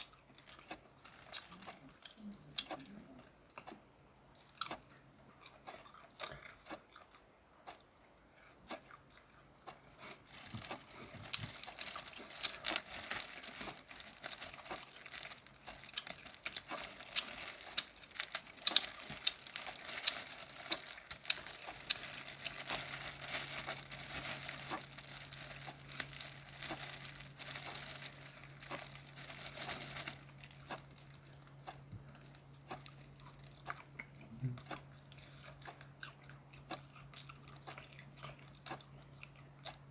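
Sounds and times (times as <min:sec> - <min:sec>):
crunching while eating: 0:00.0 - 0:39.9
shrimp shells crackling and tearing: 0:10.3 - 0:33.7.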